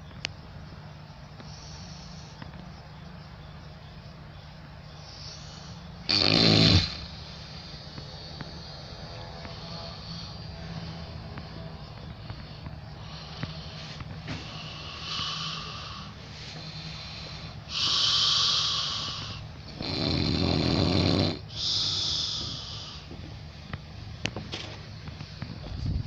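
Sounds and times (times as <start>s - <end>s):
person snoring: 5.3s - 8.8s, 14.4s - 23.1s.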